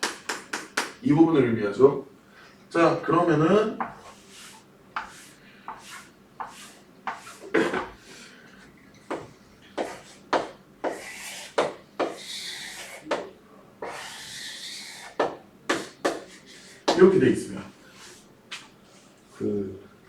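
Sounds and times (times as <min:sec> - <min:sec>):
scratchy writing strokes: 0:03.8 - 0:07.5, 0:09.1 - 0:17.0.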